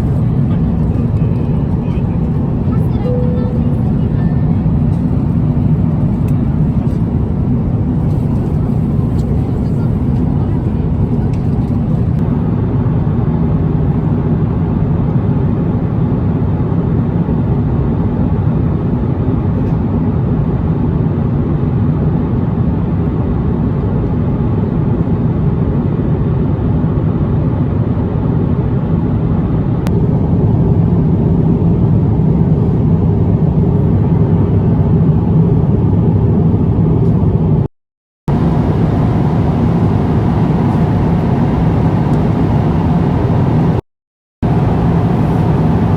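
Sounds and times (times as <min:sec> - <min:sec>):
low rumble of moving vehicle: 0:00.0 - 0:37.7, 0:38.3 - 0:43.8, 0:44.4 - 0:45.9.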